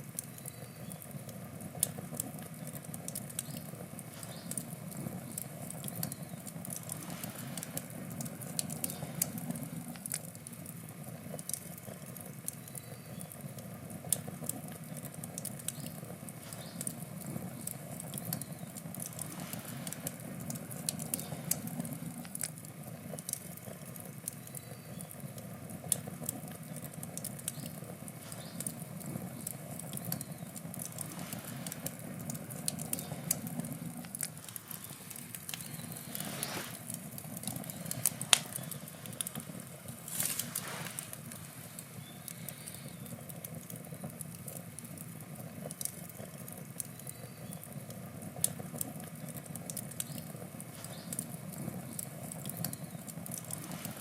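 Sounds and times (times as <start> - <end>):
campfire crackles and pops: 0.0 - 54.0
low rumble of flame: 0.0 - 54.0
rushes of hiss: 6.8 - 9.4, 30.8 - 42.0.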